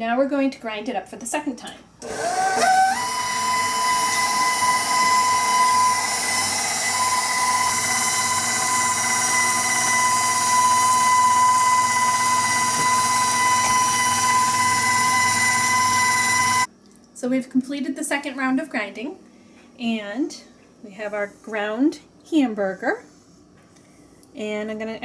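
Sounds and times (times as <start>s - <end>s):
stand mixer motor whining: 2.0s - 16.7s.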